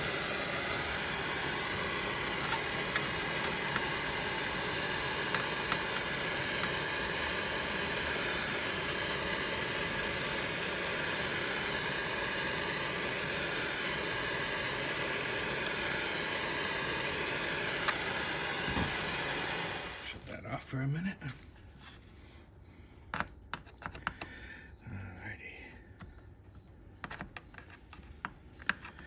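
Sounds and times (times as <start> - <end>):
gas torch hissing: 0.0 - 20.4.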